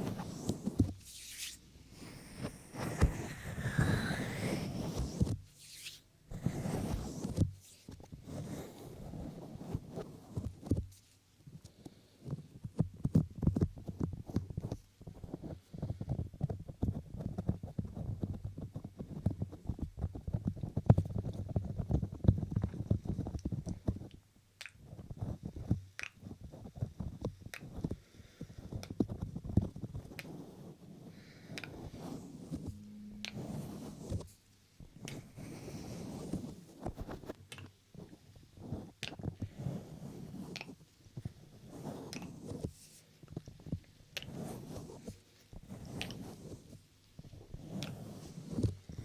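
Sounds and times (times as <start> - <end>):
crackly rustling on microphone: 0.0 - 24.2, 24.8 - 49.0.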